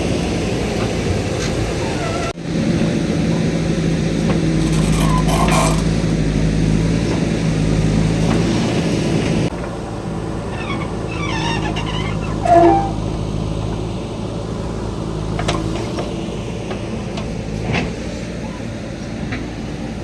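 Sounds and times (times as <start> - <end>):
diesel backhoe engine running: 0.0 - 20.0
brief squeal: 10.5 - 13.1.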